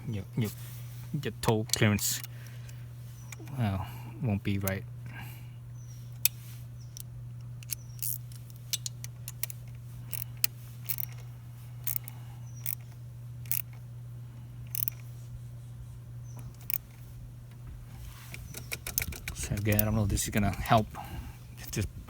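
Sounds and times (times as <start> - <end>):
low hum: 0.0 - 22.0
metal tools clicking: 6.2 - 13.8, 14.7 - 15.1, 16.4 - 17.0, 18.3 - 20.8.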